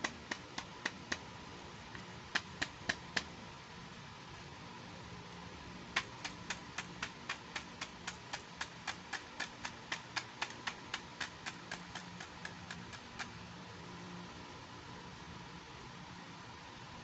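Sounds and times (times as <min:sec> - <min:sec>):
evenly spaced sharp clicks: 0:06.0 - 0:13.4.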